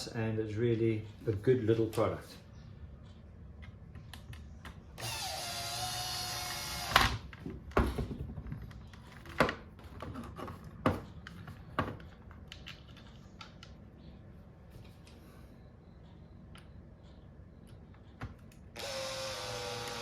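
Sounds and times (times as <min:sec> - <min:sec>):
power tool motor whirring: 0:05.0 - 0:07.2, 0:18.8 - 0:20.0.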